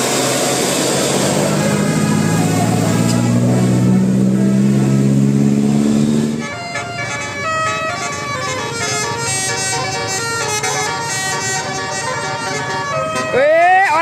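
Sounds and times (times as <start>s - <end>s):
musical air horns: 2.8s - 14.0s.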